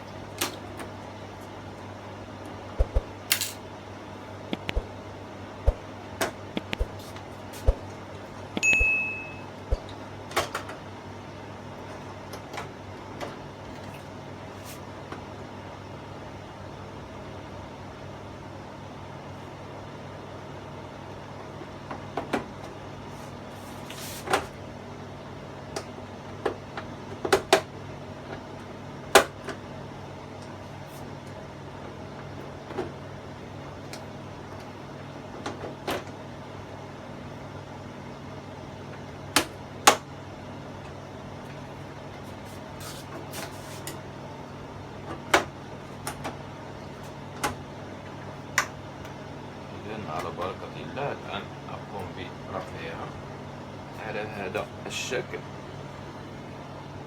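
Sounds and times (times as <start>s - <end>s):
steady low hum: 0.0s - 11.8s.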